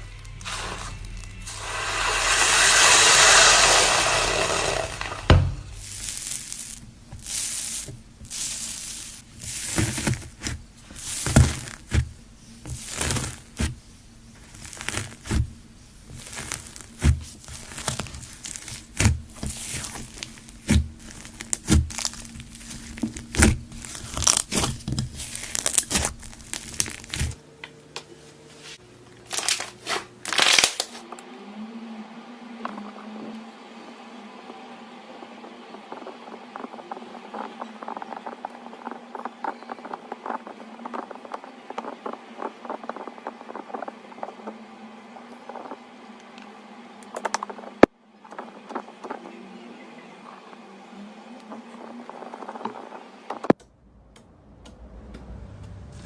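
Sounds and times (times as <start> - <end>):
slime crackling hiss: 0.4 - 27.4.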